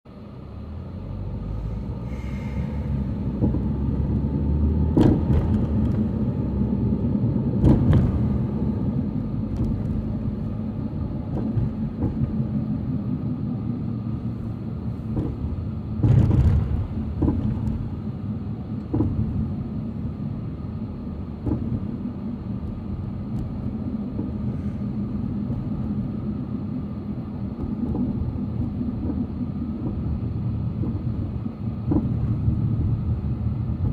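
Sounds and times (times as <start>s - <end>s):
heavy machinery engine rumble: 0.1s - 33.9s
sharp knocks and clanks: 4.8s - 6.2s, 7.6s - 8.7s, 11.2s - 12.4s, 15.0s - 18.0s, 18.8s - 19.6s, 21.4s - 21.9s, 27.6s - 33.0s.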